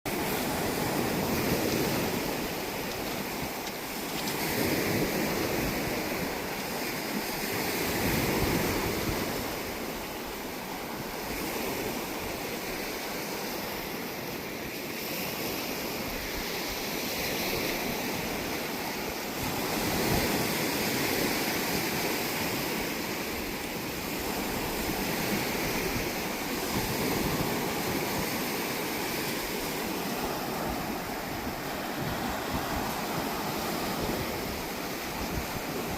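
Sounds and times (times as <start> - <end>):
surf washing onto beach: 0.1 - 35.9
wind on microphone: 0.1 - 35.9.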